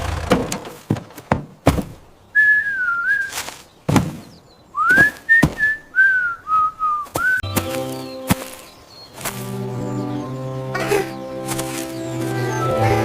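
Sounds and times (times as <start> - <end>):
sharp knocks: 0.0 - 2.0
person whistling a tune: 2.4 - 3.3, 4.8 - 7.6.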